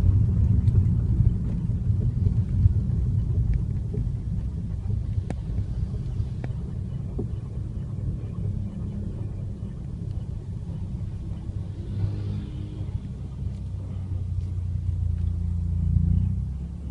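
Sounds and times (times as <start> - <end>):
car engine low rumble: 0.0 - 16.9
light ticks: 0.5 - 7.4, 14.4 - 15.5.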